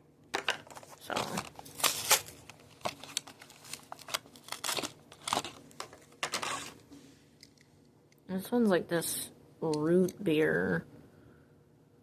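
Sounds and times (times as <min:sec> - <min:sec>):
plastic and cardboard crinkling and tearing: 0:00.4 - 0:06.8.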